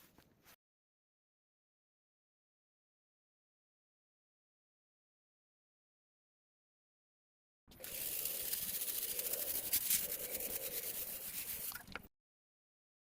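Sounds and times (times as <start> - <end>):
hissy scrubbing noise: 7.8 - 11.8.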